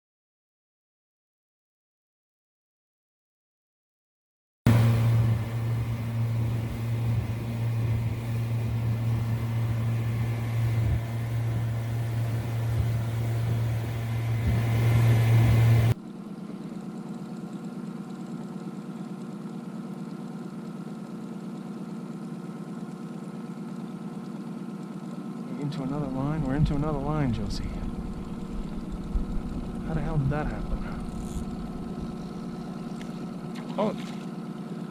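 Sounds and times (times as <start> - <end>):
higher-pitched steady hum: 4.7 - 16.0, 25.5 - 34.3
outboard motor running: 4.7 - 34.9.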